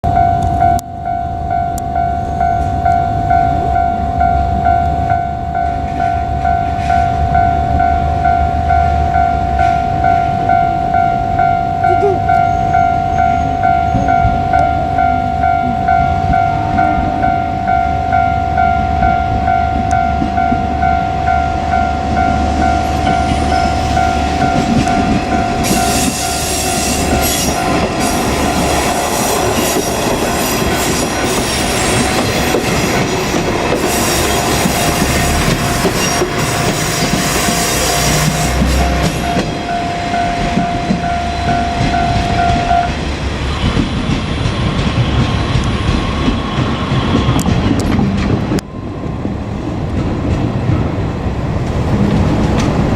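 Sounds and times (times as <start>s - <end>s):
level crossing warning bell: 0.0s - 44.1s
diesel railcar engine running: 0.0s - 52.9s
train wheels clattering: 19.0s - 52.9s.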